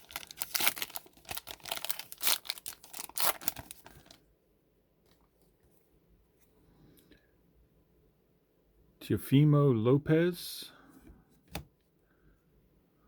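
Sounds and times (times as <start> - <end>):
wrapper tearing and crinkling: 0.0 - 4.2.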